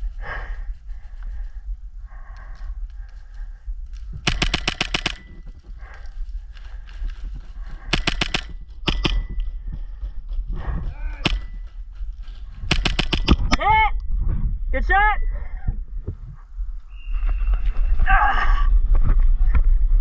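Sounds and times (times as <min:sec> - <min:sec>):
wind rumble on microphone: 0:00.0 - 0:04.3, 0:05.2 - 0:20.0
airsoft pistol full-auto bursts: 0:04.3 - 0:05.4, 0:07.9 - 0:09.2, 0:12.7 - 0:13.4.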